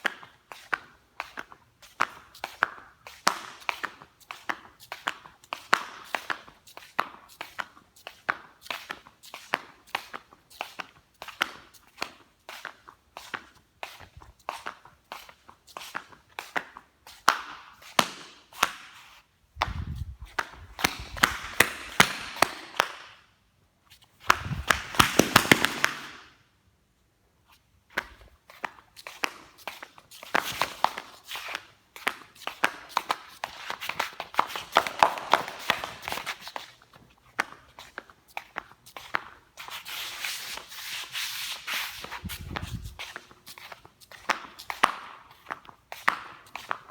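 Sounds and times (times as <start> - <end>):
rustling scuffing: 7.3 - 22.8, 23.9 - 26.2, 27.5 - 46.9
flip-flops slapping: 12.6 - 23.1, 24.2 - 26.3, 27.9 - 46.9.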